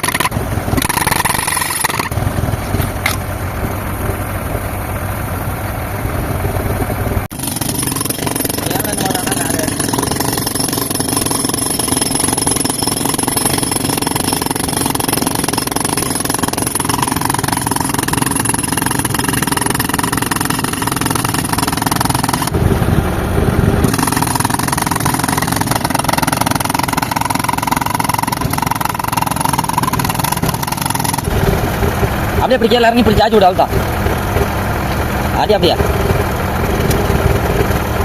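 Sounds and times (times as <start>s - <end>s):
pneumatic breaker hammering concrete: 0.0s - 3.2s, 7.3s - 22.6s, 23.4s - 34.6s
air compressor engine running: 0.0s - 38.0s.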